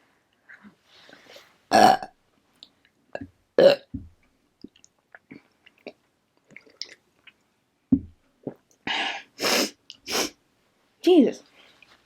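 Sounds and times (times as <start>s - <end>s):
low thump: 7.9s - 8.2s.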